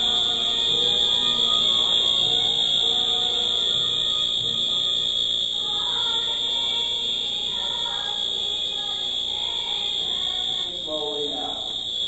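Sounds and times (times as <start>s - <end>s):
faint voices of people: 0.0s - 11.9s
fire alarm high-pitched tone: 0.0s - 12.0s.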